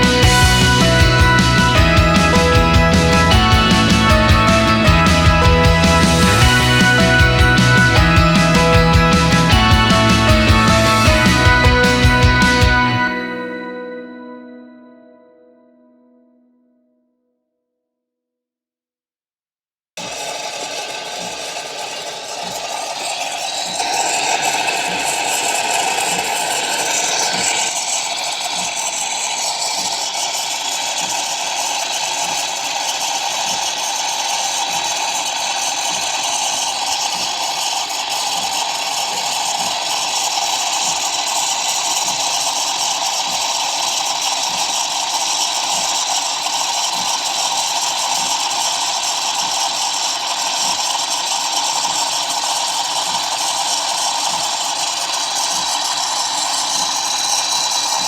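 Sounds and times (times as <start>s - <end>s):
espresso machine hissing: 20.0s - 58.0s.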